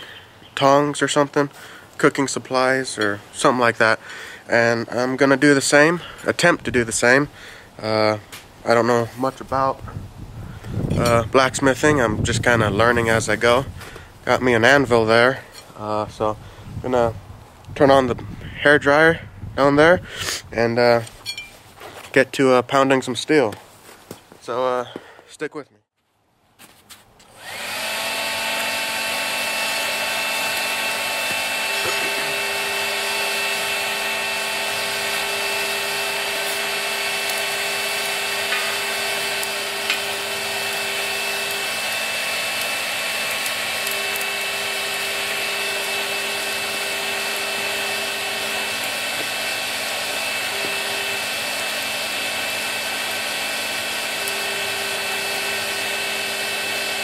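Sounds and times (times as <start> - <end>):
hair dryer whirring: 27.3 - 57.0.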